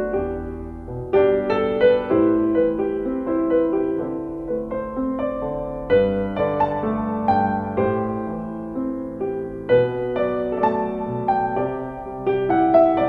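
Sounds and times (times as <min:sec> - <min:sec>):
piano music: 0:00.0 - 0:13.0.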